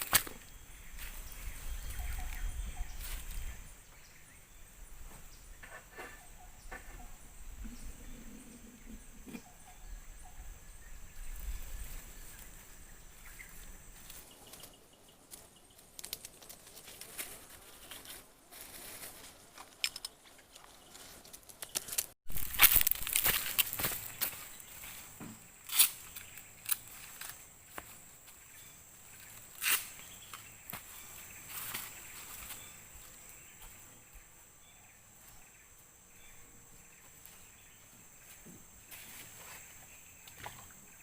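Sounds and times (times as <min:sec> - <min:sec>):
clicks and crackles: 0:15.3 - 0:17.4, 0:19.5 - 0:23.9.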